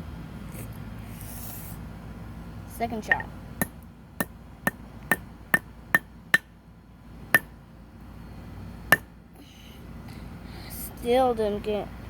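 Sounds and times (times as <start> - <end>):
hammer striking fidget spinner: 7.3 - 7.5.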